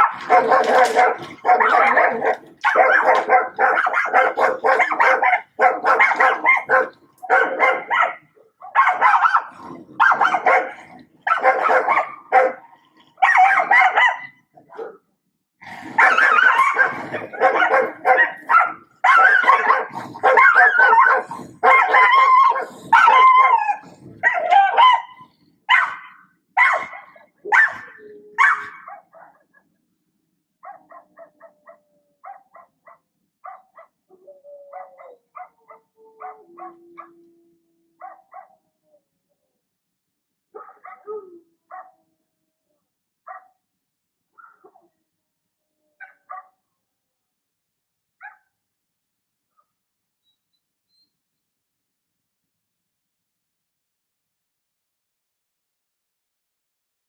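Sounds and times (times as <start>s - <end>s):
dog barking: 0.0s - 15.0s, 15.9s - 29.6s, 30.6s - 34.0s, 34.7s - 37.1s, 38.0s - 38.6s, 40.5s - 42.0s, 43.3s - 43.6s, 44.4s - 44.8s, 46.0s - 46.6s, 48.2s - 48.5s.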